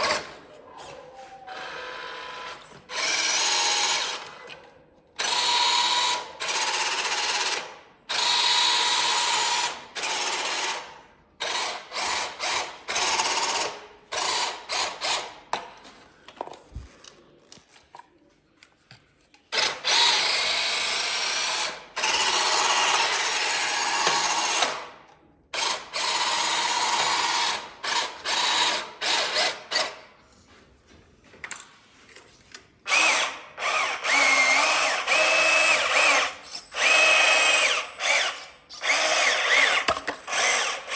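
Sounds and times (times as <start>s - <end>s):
small geared electric motors whirring: 32.9s - 40.9s.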